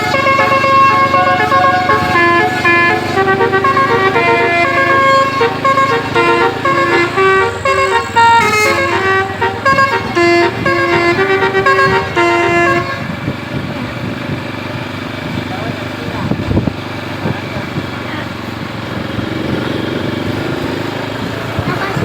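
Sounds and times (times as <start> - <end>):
multi-note air horn tune: 0.0 - 13.4
steady low drone: 0.0 - 14.4.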